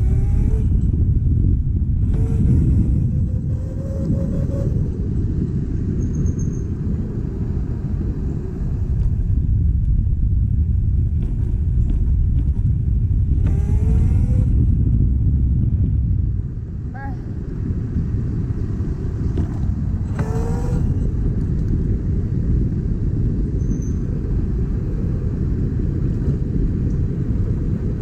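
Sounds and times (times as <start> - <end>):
scooter engine running: 0.0 - 28.0
wind rumble on microphone: 0.0 - 28.0.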